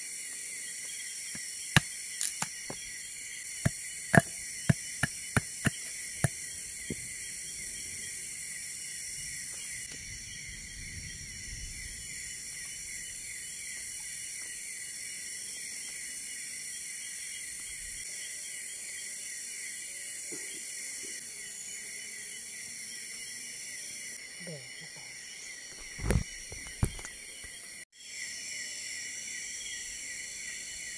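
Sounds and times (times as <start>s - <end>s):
night insects trilling: 0.0s - 30.9s
sharp knocks: 4.2s - 7.0s.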